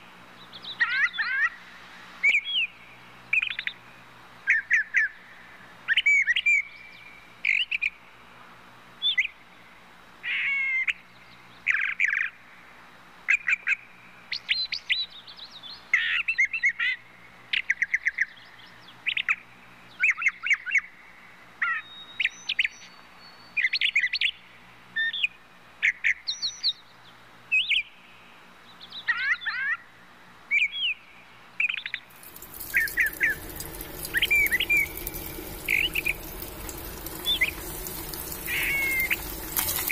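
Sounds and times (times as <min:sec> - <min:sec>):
small birds chirping: 0:31.6 - 0:39.9
steady hiss: 0:32.1 - 0:39.9.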